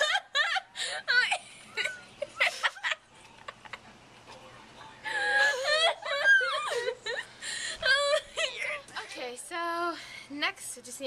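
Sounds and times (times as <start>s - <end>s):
high-pitched voices giggling: 0.0s - 4.0s, 5.0s - 8.9s.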